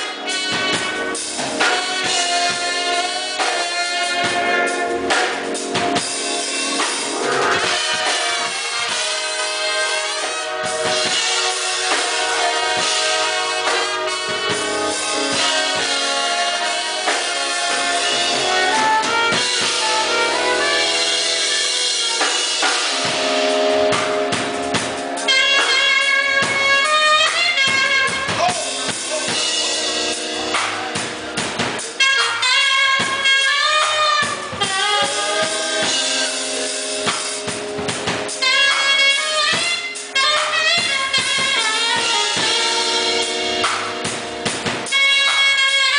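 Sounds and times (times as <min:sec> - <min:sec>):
drum kit beat: 0:00.0 - 0:45.9
horn playing melody: 0:00.0 - 0:45.9.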